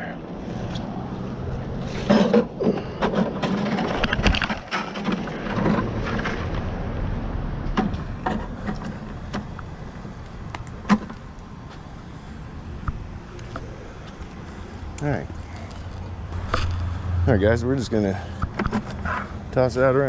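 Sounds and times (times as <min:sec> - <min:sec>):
knocks clanks and rattles of handling: 0:01.9 - 0:06.6, 0:07.7 - 0:09.6.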